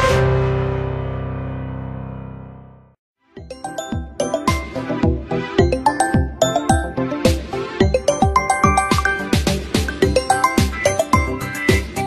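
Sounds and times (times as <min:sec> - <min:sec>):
bell-like ringtone melody: 0:03.4 - 0:12.0.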